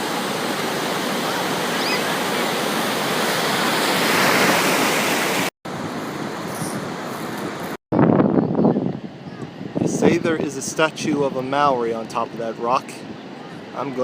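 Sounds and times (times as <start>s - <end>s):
rushing water: 0.0s - 7.8s
wind noise: 5.7s - 14.0s.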